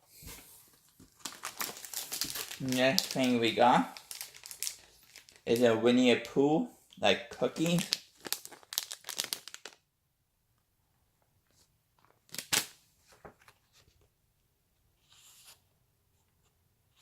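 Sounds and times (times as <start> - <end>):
plastic snack packet crinkling: 1.1 - 5.6, 7.4 - 9.8.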